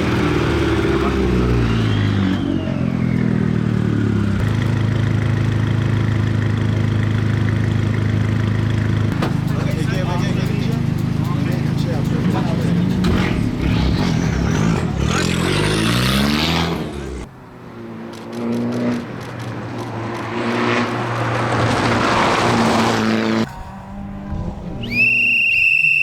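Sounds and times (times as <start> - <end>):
rally car engine accelerating: 0.0 - 25.4
car rushing past: 9.1 - 25.7
steady high whistle: 24.8 - 26.0.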